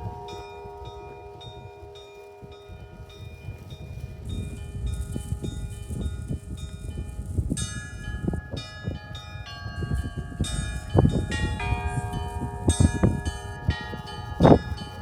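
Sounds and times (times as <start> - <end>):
church bells ringing: 0.0 - 15.0
deep bell strikes: 9.6 - 15.0.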